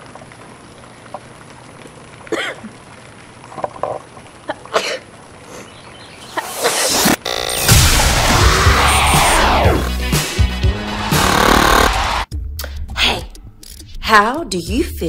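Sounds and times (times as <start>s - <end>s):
loud burst of noise: 6.4s - 10.1s, 11.0s - 12.3s.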